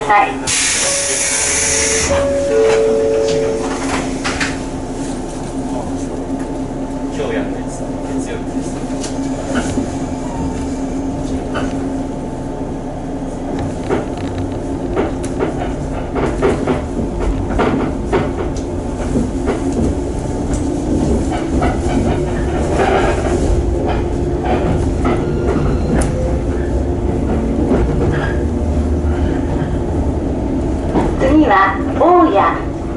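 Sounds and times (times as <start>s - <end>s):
train interior hum: 0.0s - 32.9s
wheels clacking over rail joints: 13.6s - 29.8s.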